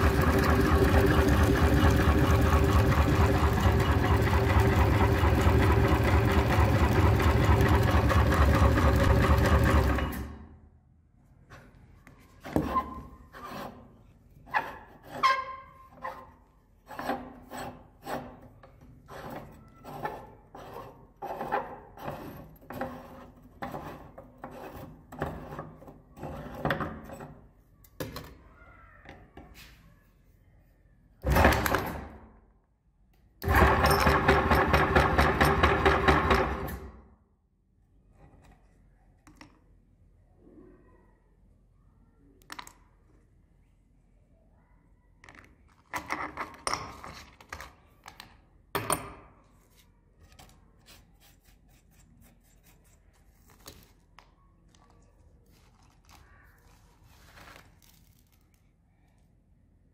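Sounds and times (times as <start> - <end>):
electric meat grinder motor: 0.0 - 9.7.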